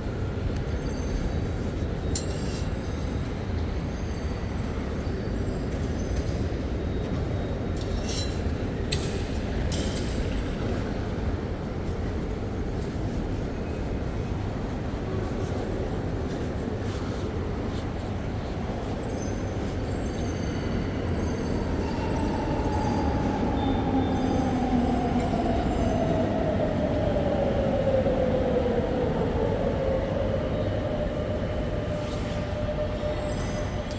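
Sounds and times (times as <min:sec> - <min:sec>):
metro train rumbling: 0:00.0 - 0:33.9.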